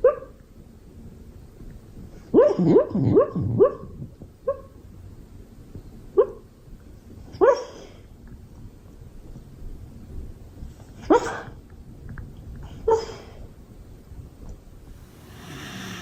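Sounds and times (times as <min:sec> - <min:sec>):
dog barking: 0:00.0 - 0:00.4, 0:02.4 - 0:03.9, 0:06.2 - 0:06.4, 0:07.4 - 0:07.8.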